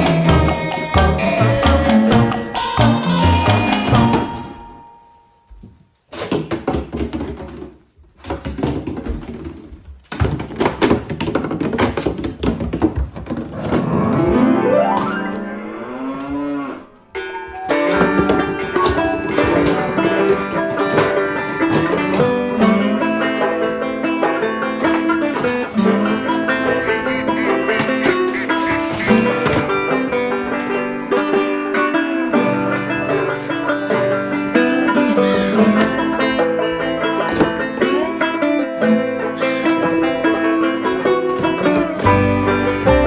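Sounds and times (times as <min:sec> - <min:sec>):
choppy bursts of sound: 0:00.0 - 0:04.7, 0:26.7 - 0:29.5
banjo music: 0:00.0 - 0:05.1, 0:13.6 - 0:16.2, 0:17.2 - 0:43.0
cow mooing: 0:15.3 - 0:19.4, 0:26.8 - 0:29.4, 0:35.2 - 0:36.0.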